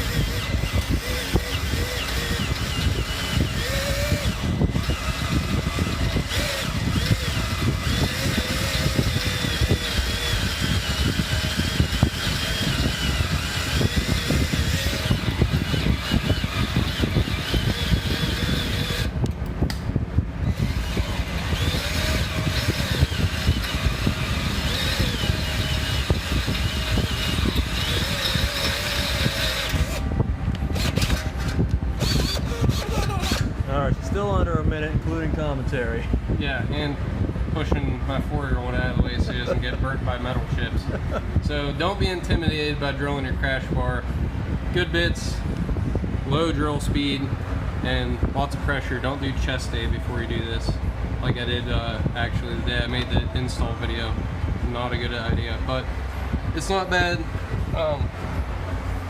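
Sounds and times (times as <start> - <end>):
power drill whining through metal: 0.0 - 19.2, 20.4 - 30.0, 30.7 - 33.5.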